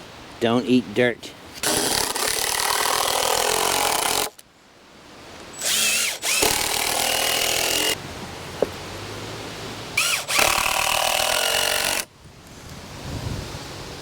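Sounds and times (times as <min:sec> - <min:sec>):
cordless drill driving screws into wood: 0:01.6 - 0:04.4, 0:05.5 - 0:08.0, 0:10.0 - 0:12.1.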